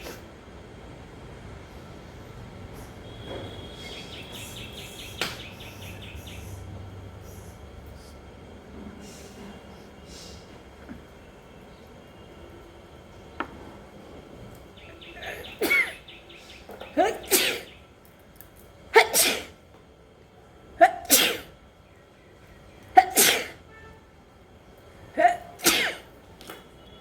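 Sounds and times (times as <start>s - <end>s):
woman sneezing: 17.0s - 17.7s, 19.0s - 19.6s, 20.8s - 21.5s, 23.0s - 23.6s, 25.2s - 26.1s.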